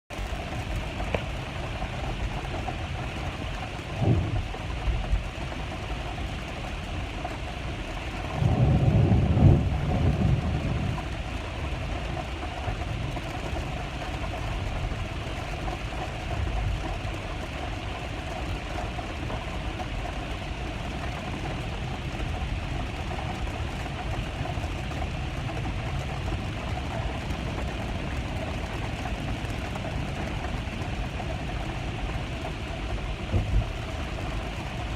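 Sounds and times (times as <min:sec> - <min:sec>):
rain falling steadily: 0:00.1 - 0:34.9
low thunder rumble: 0:00.4 - 0:06.1, 0:07.9 - 0:17.2, 0:23.3 - 0:34.9.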